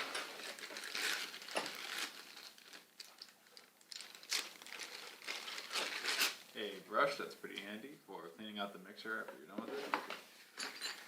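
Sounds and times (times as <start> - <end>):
packaging crinkling and rustling: 0.0 - 6.5.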